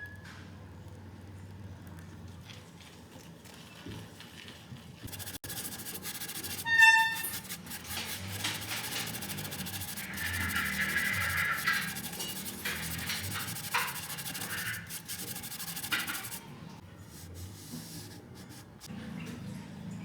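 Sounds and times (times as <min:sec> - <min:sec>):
scrubbing a coin: 0:05.1 - 0:16.4, 0:17.1 - 0:18.9.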